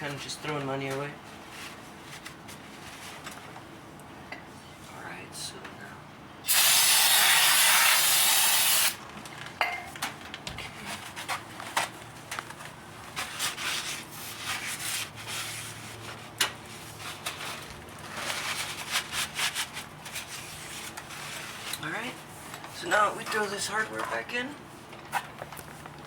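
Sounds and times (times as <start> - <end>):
aerosol spray hiss: 6.5 - 9.0.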